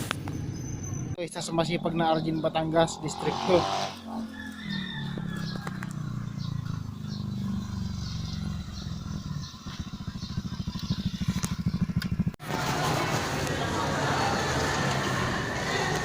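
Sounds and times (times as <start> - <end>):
motor vehicle engine running: 3.8 - 16.0.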